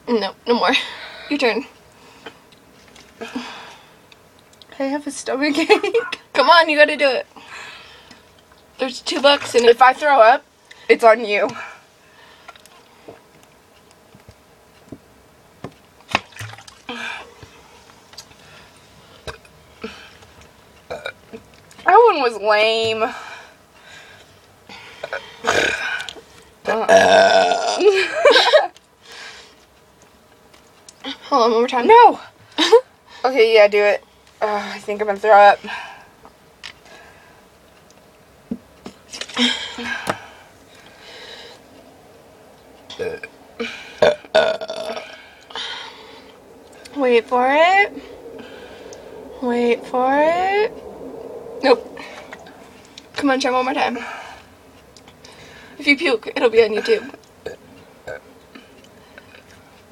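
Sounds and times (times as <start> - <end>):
girl belching: 20.9 - 21.2, 25.4 - 25.9, 26.7 - 28.0, 42.9 - 45.2, 57.4 - 58.2.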